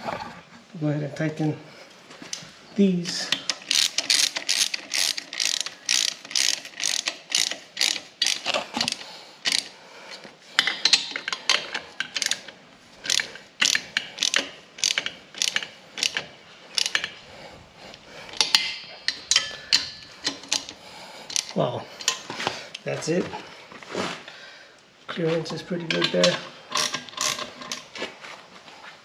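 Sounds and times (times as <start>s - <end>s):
ratchet wrench clicking: 3.3s - 9.8s, 10.8s - 17.2s, 18.3s - 22.2s, 25.9s - 27.9s.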